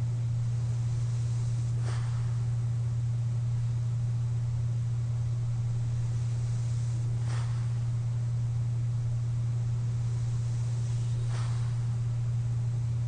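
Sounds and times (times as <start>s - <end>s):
steady low hum: 0.0s - 13.0s
breathy exhale through mask: 1.0s - 2.6s, 6.1s - 8.2s, 9.9s - 12.4s.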